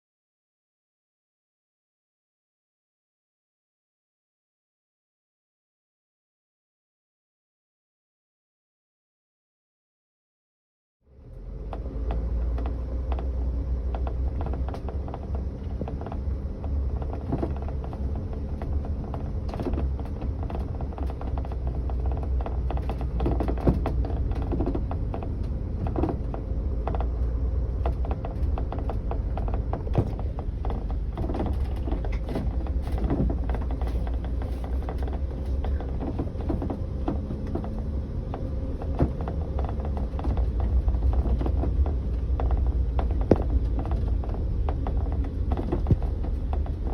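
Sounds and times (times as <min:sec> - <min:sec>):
low rumble: 0:11.1 - 0:46.9
sliding door creaking and clicking: 0:11.6 - 0:46.9.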